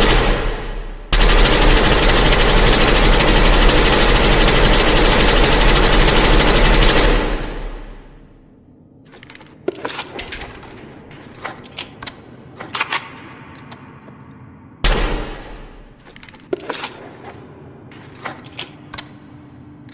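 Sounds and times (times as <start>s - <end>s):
machine gun bursts: 0.0s - 8.0s.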